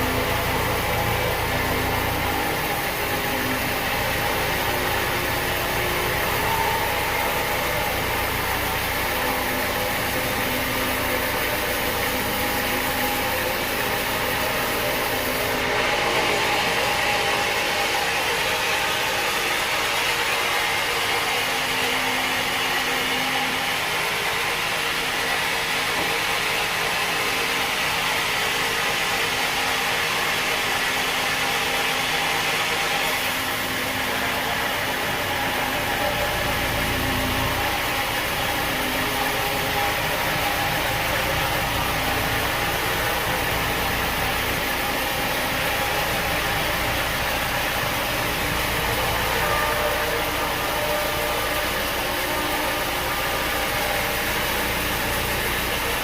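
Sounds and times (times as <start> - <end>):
sawmill machinery drone: 0.0 - 56.0.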